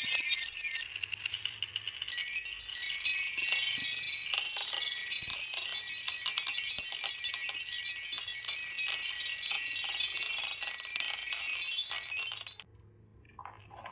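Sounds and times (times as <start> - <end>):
marbles clattering down a track: 0.0 - 12.7.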